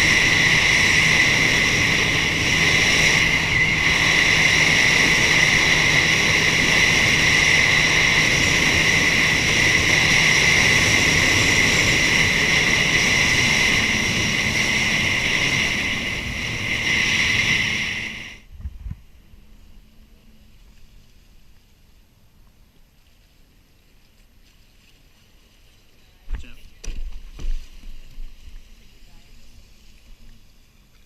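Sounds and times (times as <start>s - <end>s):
rushing wind and water: 0.0s - 19.0s
jet ski engine whine: 0.0s - 21.3s.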